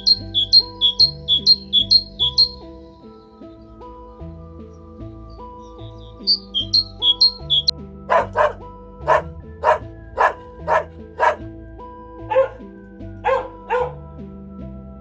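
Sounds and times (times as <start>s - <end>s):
background music: 0.0s - 15.0s
dog barking: 8.1s - 11.4s, 12.3s - 12.6s, 13.2s - 14.0s.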